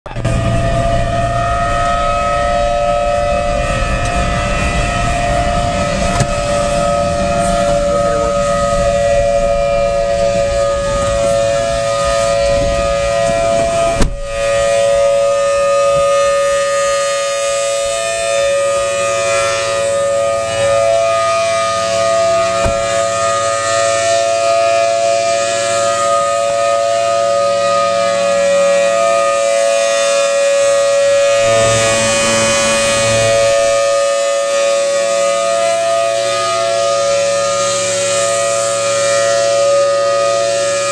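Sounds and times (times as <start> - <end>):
low rumble: 0.1 - 16.4, 31.2 - 34.2
siren wailing: 0.1 - 40.9.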